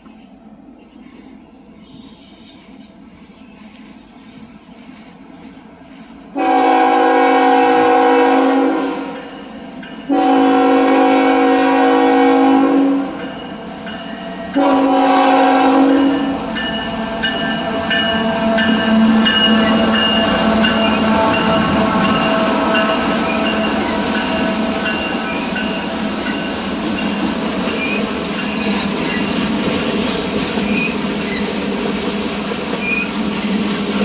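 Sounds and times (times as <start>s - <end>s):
train wheels on rails: 0.0s - 34.0s
locomotive air horn blasts: 6.4s - 9.3s, 10.1s - 13.2s, 14.6s - 16.4s, 18.5s - 24.8s.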